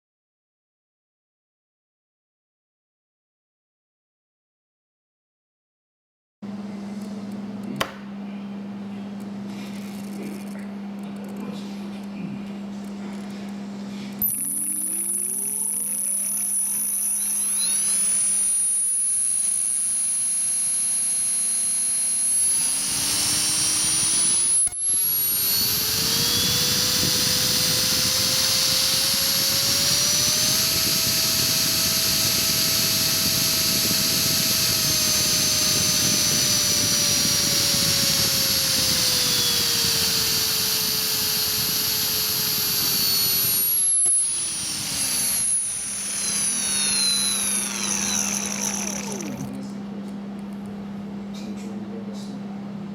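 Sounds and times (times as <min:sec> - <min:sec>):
electric motor whine: 0:09.4 - 0:49.6
rough grinding noise: 0:14.2 - 0:49.6.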